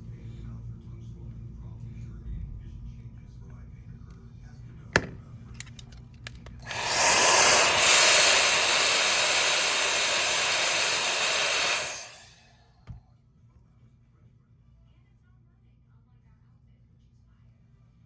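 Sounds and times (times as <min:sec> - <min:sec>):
hiss of blown air: 0:06.6 - 0:12.4.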